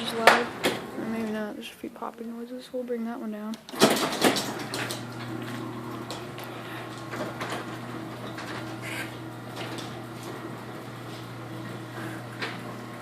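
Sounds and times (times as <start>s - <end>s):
garage door opener humming: 0.0s - 1.5s, 3.6s - 13.0s
door hinges popping and clicking: 3.7s - 5.0s.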